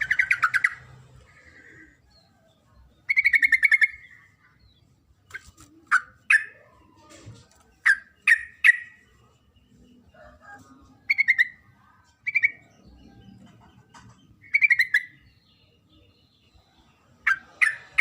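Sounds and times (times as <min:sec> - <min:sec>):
bird chattering calls: 0:00.0 - 0:02.0, 0:03.0 - 0:04.5, 0:05.3 - 0:06.8, 0:07.8 - 0:09.1, 0:13.6 - 0:15.2, 0:17.2 - 0:18.0
bird sharp down-slurred calls: 0:00.0 - 0:02.0, 0:07.8 - 0:09.0.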